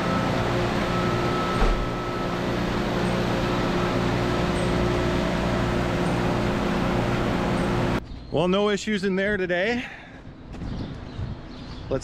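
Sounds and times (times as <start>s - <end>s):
mechanical hum drone: 0.0s - 8.8s
low thump: 1.6s - 1.9s.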